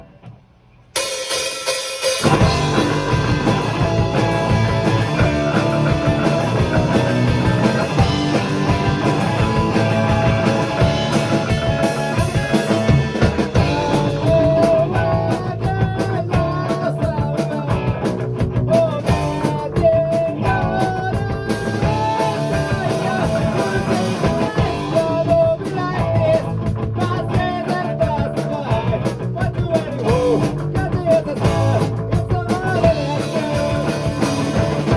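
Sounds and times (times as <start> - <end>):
punk rock band playing: 1.0 - 34.9
person singing: 12.6 - 17.8, 18.7 - 34.9.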